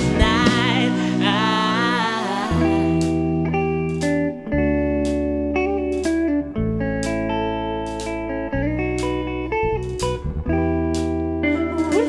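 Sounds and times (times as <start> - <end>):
live band playing soul music: 0.0 - 3.2
electric guitar: 0.0 - 12.0.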